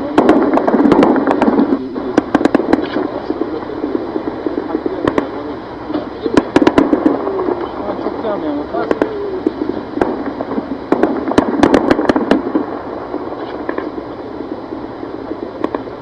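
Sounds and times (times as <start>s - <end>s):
small arms gunfire: 0.0s - 3.6s, 6.4s - 14.0s.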